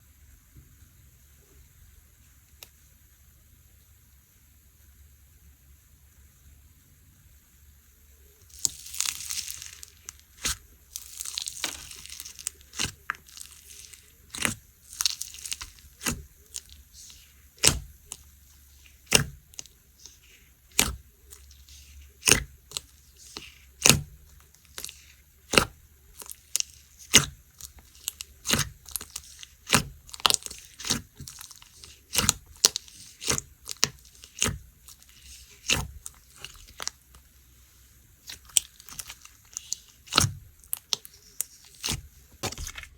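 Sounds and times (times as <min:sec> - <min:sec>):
crinkly rustle: 0:08.5 - 0:17.3
slime squished by hand popping: 0:08.5 - 0:18.2, 0:20.7 - 0:21.0.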